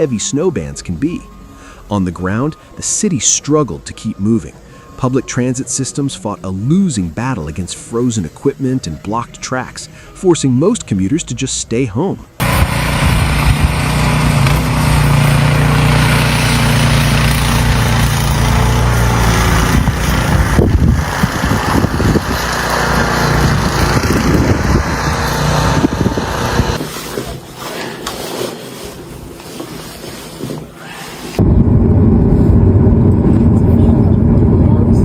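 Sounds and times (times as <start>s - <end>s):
engine humming: 12.4s - 26.8s, 31.4s - 35.0s
loud rushing noise: 12.4s - 26.8s, 31.4s - 35.0s.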